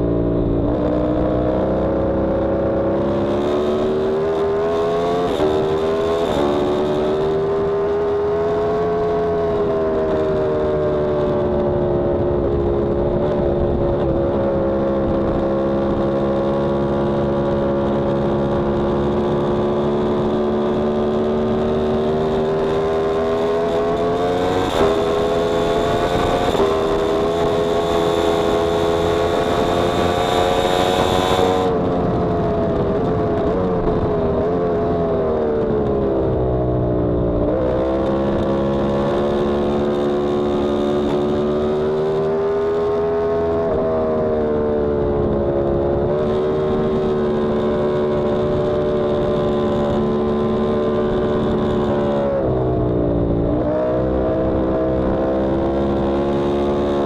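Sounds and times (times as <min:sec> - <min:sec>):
motorcycle engine at speed: 0:00.0 - 0:57.0.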